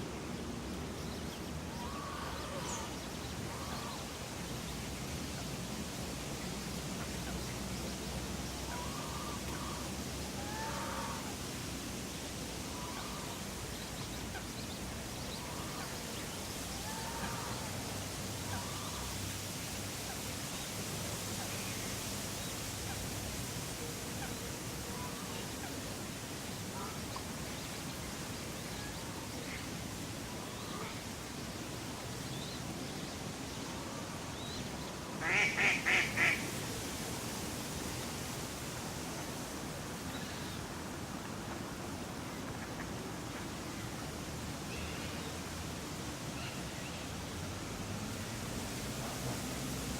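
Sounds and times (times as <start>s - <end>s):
outdoor background noise: 0.0s - 49.9s
faint bird calls: 1.7s - 4.1s, 8.6s - 11.4s
duck quacking: 35.2s - 36.4s.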